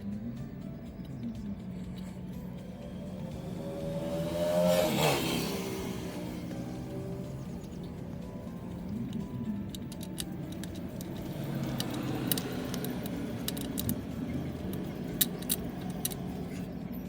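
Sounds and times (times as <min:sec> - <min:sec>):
background music: 0:00.0 - 0:17.0
socket tool clicking on bolts: 0:07.7 - 0:16.7.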